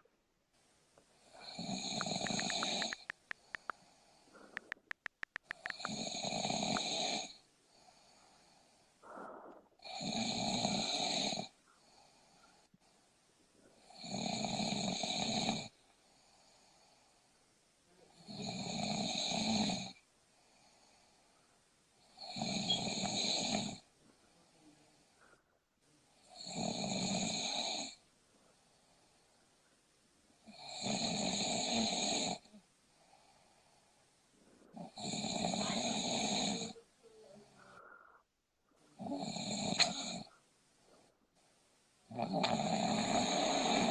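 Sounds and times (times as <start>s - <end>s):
quiet breathing: 0.0s - 43.9s
person snoring: 1.4s - 3.8s, 4.4s - 8.2s, 9.0s - 11.5s, 14.0s - 15.7s, 18.1s - 20.0s, 22.2s - 23.8s, 26.4s - 28.0s, 30.5s - 32.6s, 34.7s - 36.8s, 39.0s - 40.3s, 42.1s - 43.9s.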